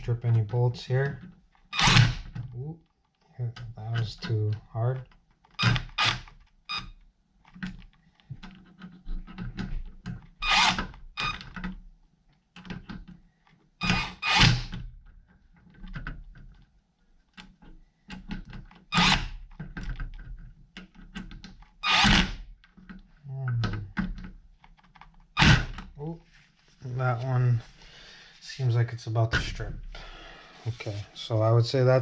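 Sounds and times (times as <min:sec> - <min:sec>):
cordless drill driving bolts: 0:05.6 - 0:06.2, 0:10.4 - 0:10.8, 0:13.8 - 0:14.7, 0:18.9 - 0:19.3, 0:21.8 - 0:22.4.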